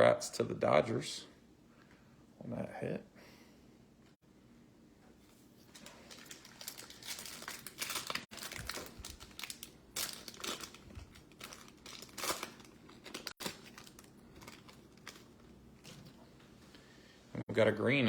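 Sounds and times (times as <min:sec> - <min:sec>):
foil wrapper tearing and crinkling: 0:05.6 - 0:16.2.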